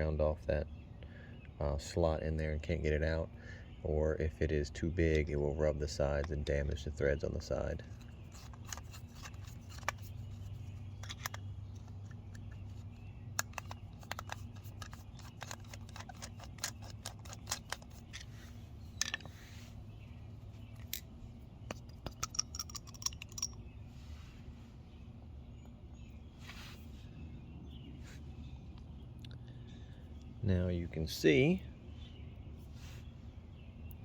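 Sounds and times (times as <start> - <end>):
steady low hum: 0.0 - 34.0
screwdriver clicking on metal parts: 7.9 - 12.0, 13.3 - 18.3, 21.7 - 23.6.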